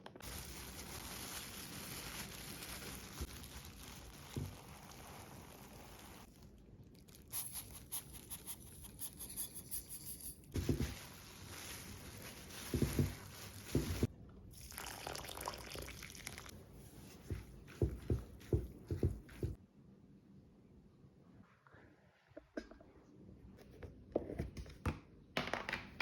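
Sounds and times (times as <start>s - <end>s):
grainy rustling and crunching: 0.2s - 7.5s, 10.5s - 14.1s, 16.6s - 19.6s.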